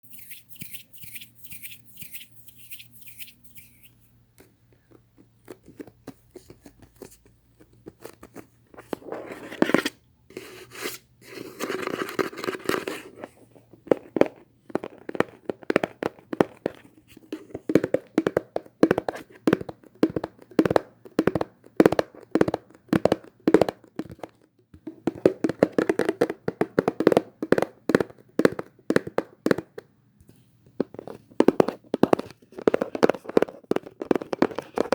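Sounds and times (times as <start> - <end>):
short scraping: 0.0 - 4.1
fingers tapping on objects: 0.1 - 4.0.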